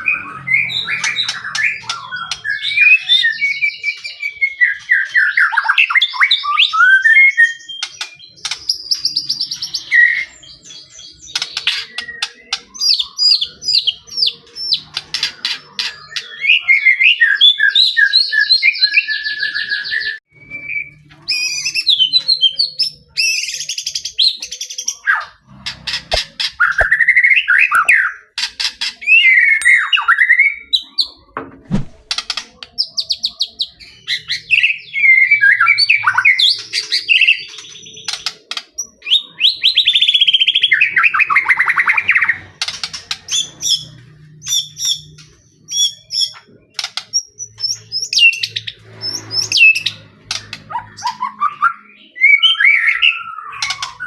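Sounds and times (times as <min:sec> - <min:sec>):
songbird singing whistles and trills: 0:00.0 - 0:25.4, 0:26.6 - 0:28.2, 0:29.0 - 0:31.9, 0:32.7 - 0:42.4, 0:50.7 - 0:54.0.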